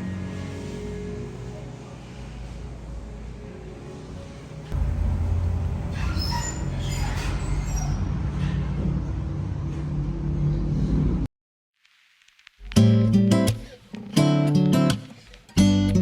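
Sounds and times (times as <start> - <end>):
vehicle rumble: 2.8 - 11.3.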